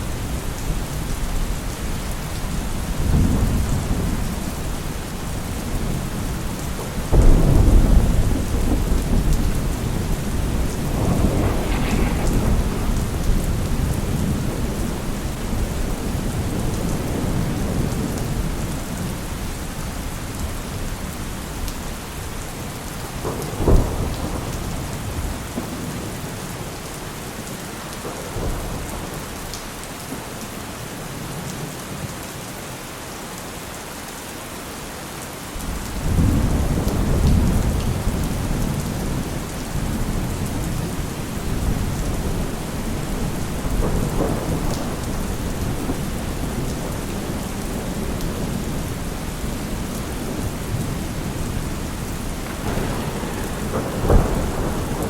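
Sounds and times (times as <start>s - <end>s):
deep thunder rumble: 0.0s - 19.4s, 35.6s - 55.0s
heavy rain: 0.0s - 55.0s
thunder crack: 7.1s - 18.5s, 35.7s - 55.0s.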